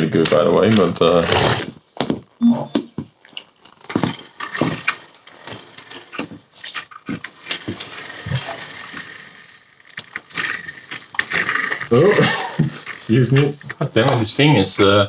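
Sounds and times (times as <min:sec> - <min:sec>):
plastic knocks and clatter: 0:03.0 - 0:09.1, 0:09.9 - 0:14.3.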